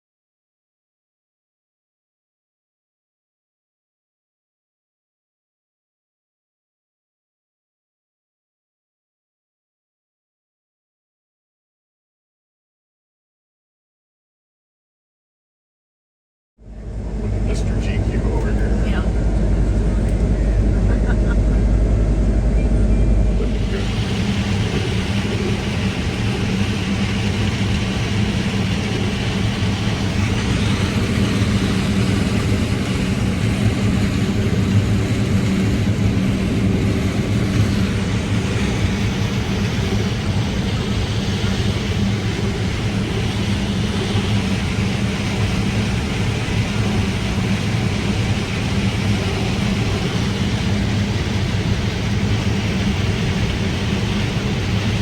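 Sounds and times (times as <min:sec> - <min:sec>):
combine harvester droning: 0:16.6 - 0:55.0.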